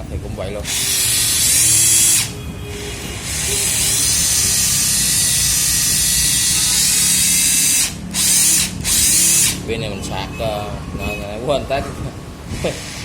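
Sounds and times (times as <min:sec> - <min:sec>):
cordless drill motor whirring: 0:00.6 - 0:09.6.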